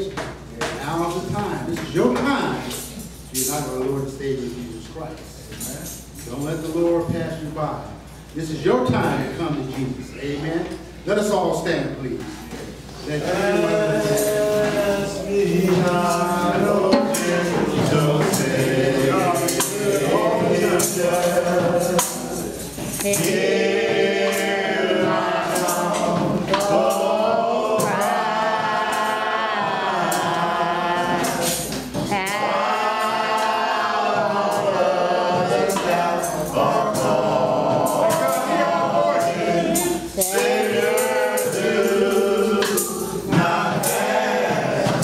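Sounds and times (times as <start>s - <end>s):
choir and congregation singing: 12.5s - 45.0s
tambourine beating: 13.2s - 45.0s.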